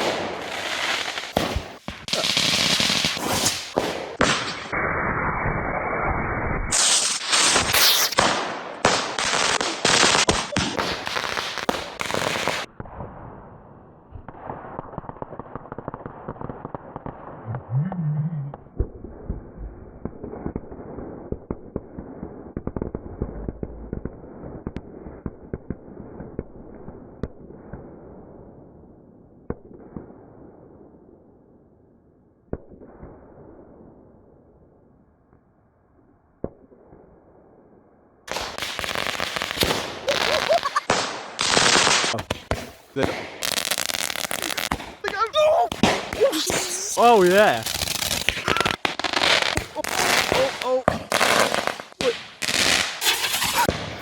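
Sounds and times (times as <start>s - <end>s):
firecrackers banging and popping: 0.0s - 4.8s, 6.7s - 12.8s, 38.3s - 54.0s.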